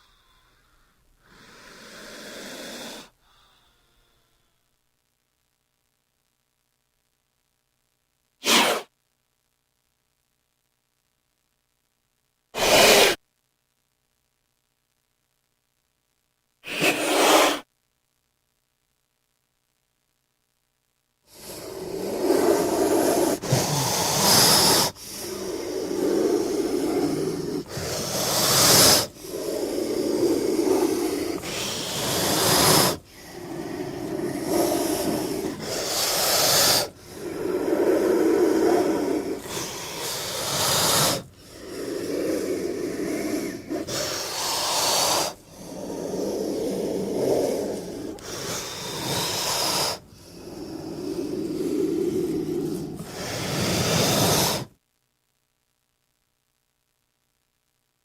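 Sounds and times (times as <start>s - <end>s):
snake hissing: 1.2s - 3.2s, 8.4s - 8.9s, 12.6s - 13.2s, 16.6s - 17.7s, 21.3s - 54.7s.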